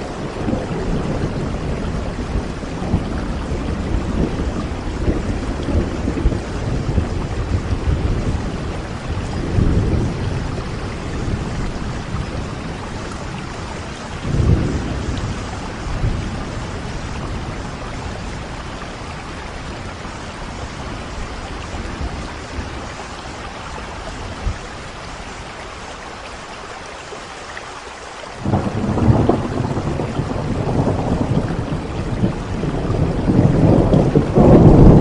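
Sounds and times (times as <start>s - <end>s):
loud roll of thunder: 0.0s - 20.0s, 28.4s - 35.0s
thunder rumbling: 0.0s - 25.6s, 28.4s - 35.0s
rain hissing: 0.0s - 35.0s.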